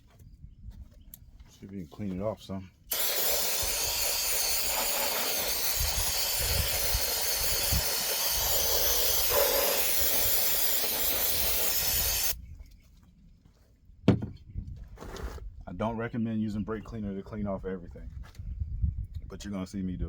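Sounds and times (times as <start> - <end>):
aerosol spray hiss: 2.9 - 12.4.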